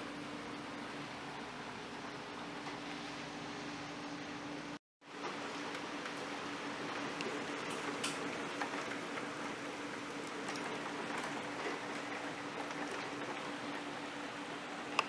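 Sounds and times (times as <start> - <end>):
rain: 5.1 - 15.0.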